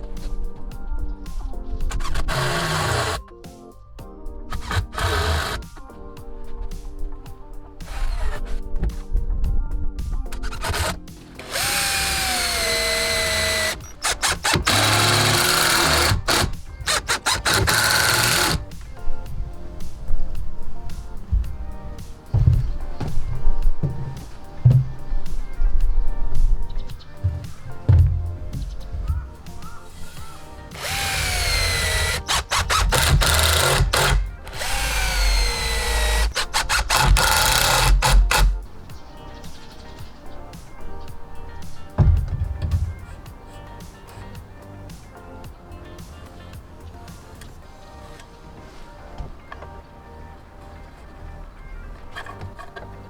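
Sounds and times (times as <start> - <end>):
electric drill running in bursts: 2.2 - 3.2, 4.6 - 5.6, 10.6 - 18.7, 30.7 - 38.6.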